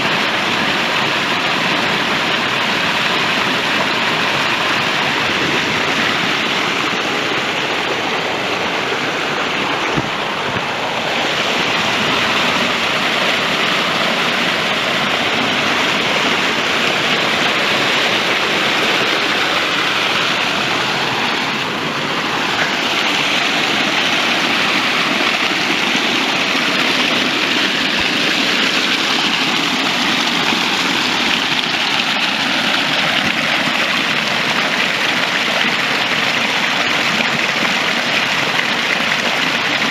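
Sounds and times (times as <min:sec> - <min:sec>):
water rushing over rocks: 0:00.0 - 0:39.9.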